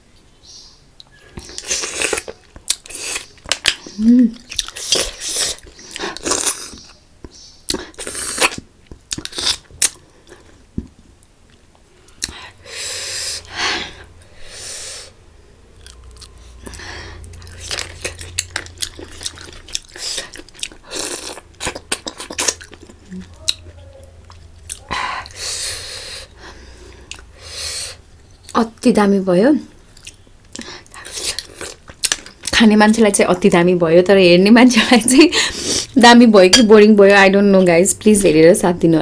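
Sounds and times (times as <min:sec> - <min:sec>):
chewing with wet mouth clicks: 0:01.0 - 0:12.5, 0:15.8 - 0:25.4, 0:26.9 - 0:27.3, 0:29.8 - 0:32.6.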